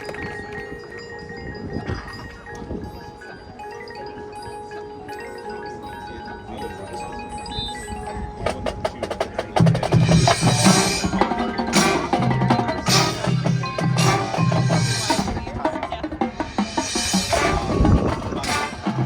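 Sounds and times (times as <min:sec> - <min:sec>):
mallet keyboards: 0:00.0 - 0:19.0
pitched bass drums: 0:09.6 - 0:19.0
sharp drum strokes: 0:09.8 - 0:19.0.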